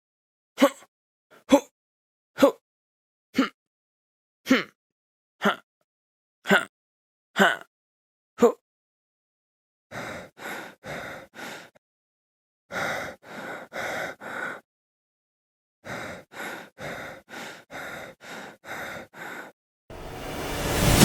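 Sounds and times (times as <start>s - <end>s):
person panting heavily: 9.9s - 11.8s, 12.7s - 14.7s, 15.8s - 19.6s.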